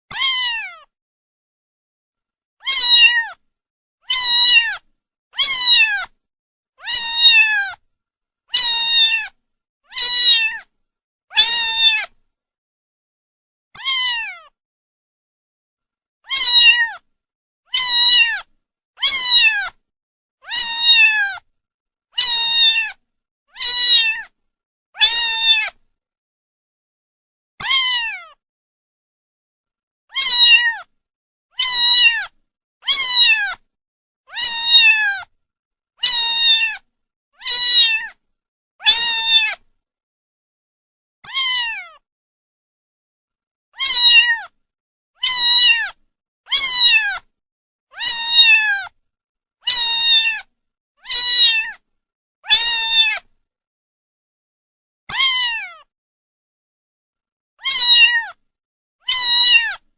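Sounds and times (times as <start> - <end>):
kittens meowing: 0.1 - 0.8, 2.6 - 3.4, 4.1 - 6.2, 6.8 - 7.8, 8.5 - 10.7, 11.3 - 12.2, 13.8 - 14.5, 16.3 - 17.0, 17.7 - 19.8, 20.4 - 21.4, 22.2 - 23.0, 23.6 - 24.3, 25.0 - 25.8, 27.6 - 28.4, 30.1 - 30.9, 31.6 - 33.6, 34.3 - 35.3, 36.0 - 36.8, 37.4 - 38.2, 38.8 - 39.6, 41.2 - 42.0, 43.8 - 44.6, 45.2 - 47.3, 48.0 - 49.0, 49.7 - 51.8, 52.4 - 53.3, 55.1 - 55.8, 57.6 - 58.4, 59.1 - 59.8.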